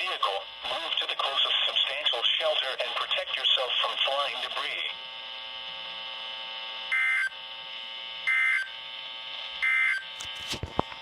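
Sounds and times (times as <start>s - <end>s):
steady electronic hum: 0.0s - 11.0s.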